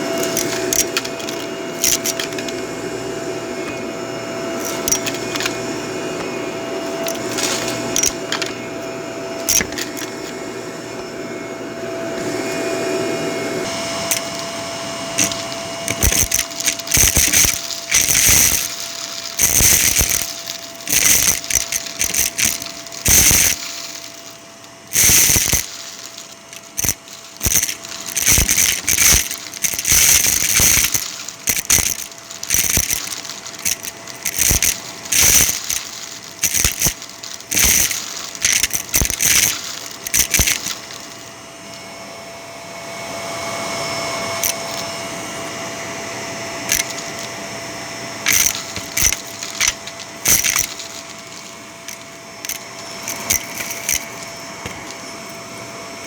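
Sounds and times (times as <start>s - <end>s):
debris rattling through hose: 0.0s - 2.8s, 4.4s - 8.8s, 9.4s - 10.4s, 13.6s - 41.3s, 44.4s - 44.8s, 46.6s - 47.4s, 48.2s - 55.5s
vacuum cleaner running: 0.0s - 56.0s.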